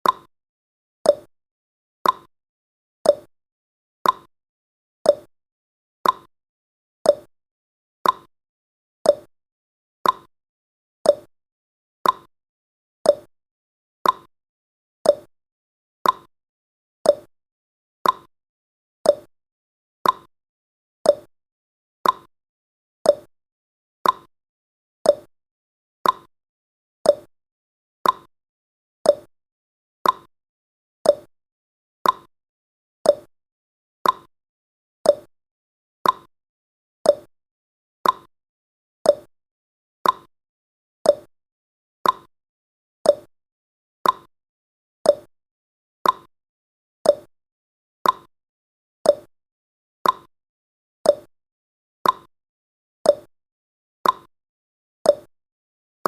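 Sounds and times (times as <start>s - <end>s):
clock ticking: 18.0s - 18.3s, 34.0s - 34.3s, 38.0s - 38.3s, 42.0s - 42.3s, 48.0s - 48.3s, 50.0s - 50.3s.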